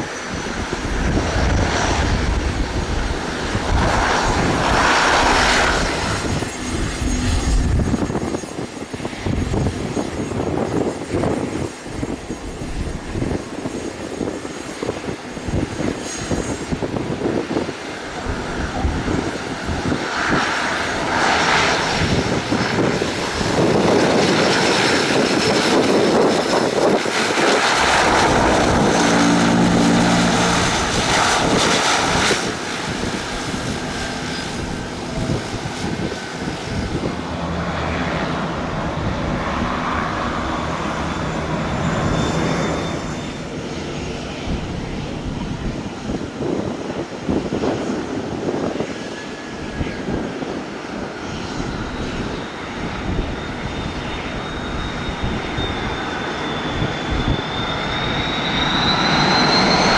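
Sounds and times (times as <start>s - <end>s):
airplane engine passing: 0.0s - 59.9s.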